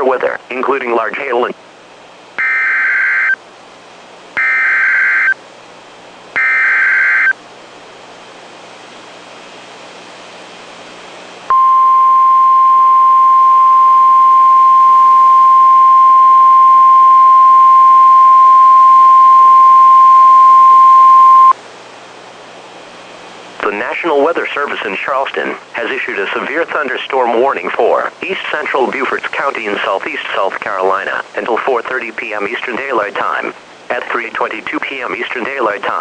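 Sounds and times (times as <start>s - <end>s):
steady warning alarm tone: 2.4s - 3.4s, 4.4s - 5.4s, 6.4s - 7.4s, 11.5s - 21.6s
buzzy warbling digital bursts: 6.4s - 7.3s.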